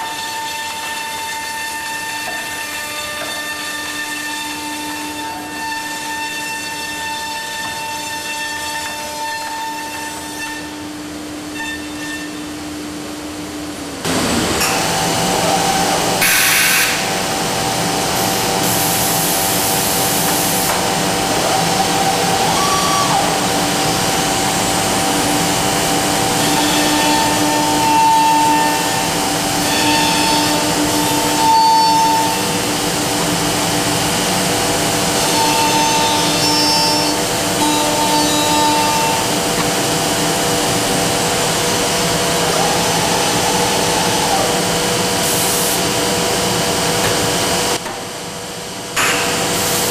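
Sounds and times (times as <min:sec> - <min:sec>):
woodworking machine whining: 0:14.0 - 0:47.8.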